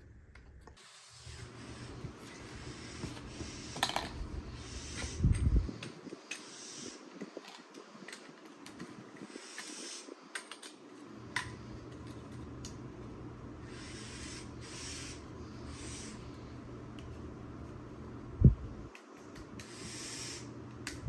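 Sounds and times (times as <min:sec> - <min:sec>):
low steady hum: 0:00.0 - 0:21.0
small parts clicking: 0:07.2 - 0:12.1.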